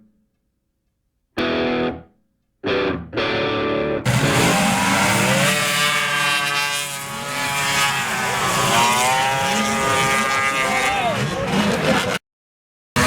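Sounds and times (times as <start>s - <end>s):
snowmobile engines revving: 4.1s - 12.2s.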